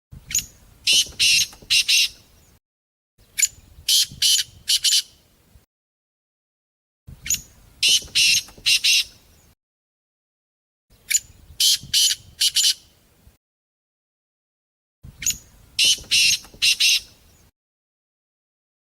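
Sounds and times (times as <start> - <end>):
partridge calling: 0.3 - 2.2, 3.4 - 5.1, 7.3 - 9.2, 11.1 - 12.8, 15.2 - 17.2.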